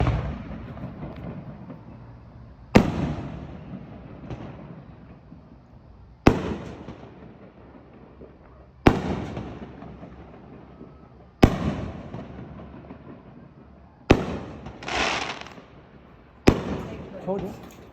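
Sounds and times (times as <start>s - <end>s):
fireworks banging: 0.0s - 13.5s, 14.1s - 17.9s.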